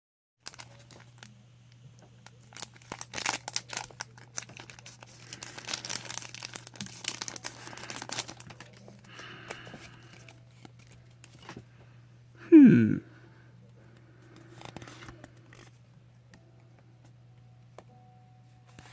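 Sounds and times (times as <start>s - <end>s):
foil wrapper crinkling and tearing: 0.4s - 1.4s, 2.2s - 11.6s
steady low hum: 7.3s - 18.6s.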